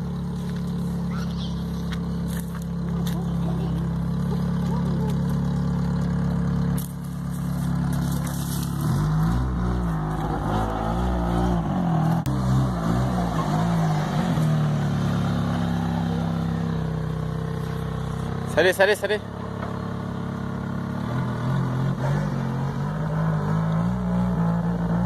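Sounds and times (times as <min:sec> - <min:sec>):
car engine idling and revving: 0:00.0 - 0:25.0.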